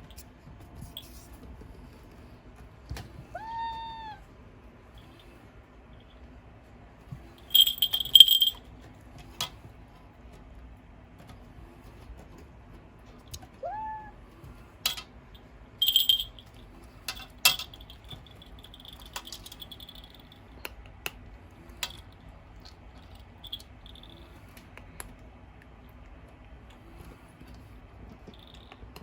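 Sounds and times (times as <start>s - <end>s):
ventilation fan hum: 0.0s - 29.0s
clink against bowl: 7.5s - 8.6s, 15.8s - 16.5s.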